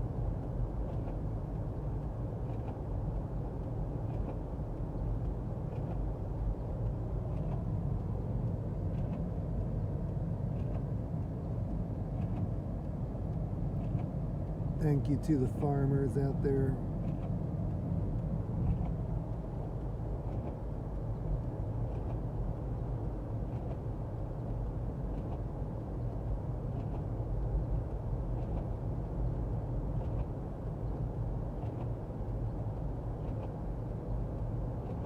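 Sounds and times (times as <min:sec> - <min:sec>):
car interior engine and tyre rumble: 0:00.0 - 0:35.0
faint light tick: 0:03.6 - 0:14.6.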